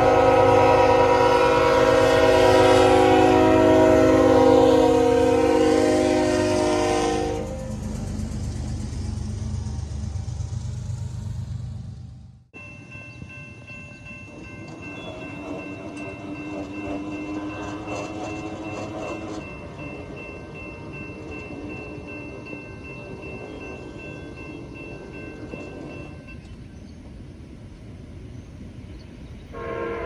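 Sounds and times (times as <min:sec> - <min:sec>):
train horn: 0:00.0 - 0:07.8, 0:16.0 - 0:19.4, 0:29.5 - 0:30.0
train rumbling past: 0:00.0 - 0:30.0
steady high ringing: 0:12.6 - 0:26.8.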